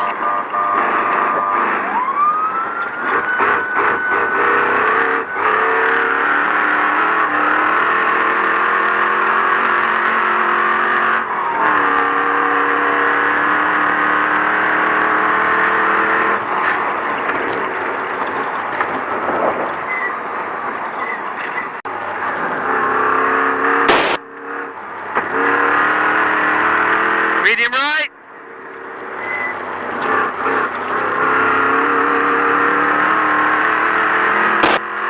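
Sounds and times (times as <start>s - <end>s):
truck horn blasts: 0.0s - 2.0s, 3.0s - 16.4s, 22.6s - 24.7s, 25.3s - 28.1s, 29.3s - 34.6s
engine and road noise: 0.0s - 35.0s.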